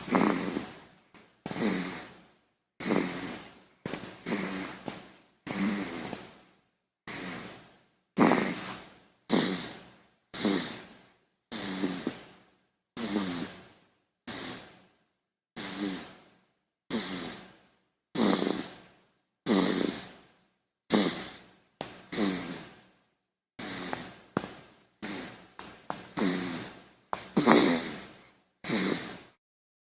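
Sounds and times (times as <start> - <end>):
baby snoring: 0.0 - 2.2, 2.8 - 6.4, 7.1 - 12.3, 13.0 - 13.7, 14.3 - 14.8, 15.6 - 16.3, 16.9 - 17.6, 18.2 - 18.8, 19.4 - 20.2, 20.9 - 22.8, 23.6 - 29.4.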